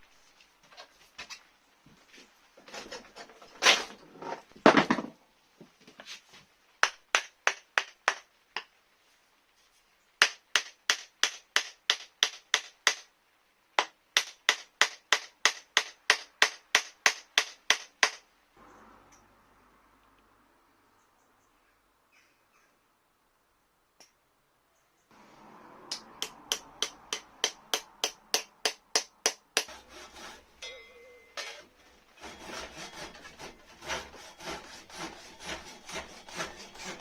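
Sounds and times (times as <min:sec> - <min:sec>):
sharp hammer taps: 0:25.9 - 0:29.7.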